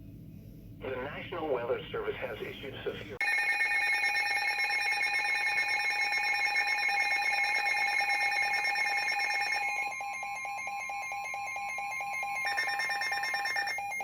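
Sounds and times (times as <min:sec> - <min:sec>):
pulsing electronic alarm tone: 0:03.2 - 0:14.0.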